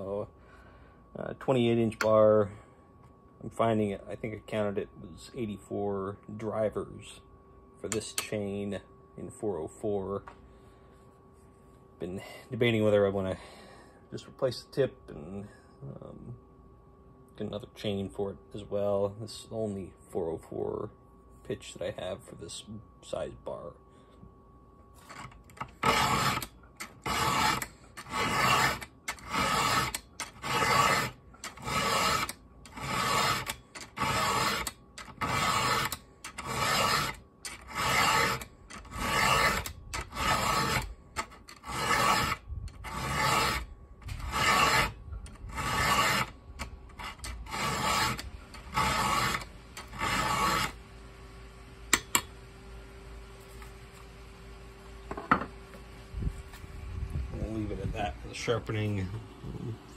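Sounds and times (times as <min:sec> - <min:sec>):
file rasping on saw chain: 0:25.1 - 0:50.8.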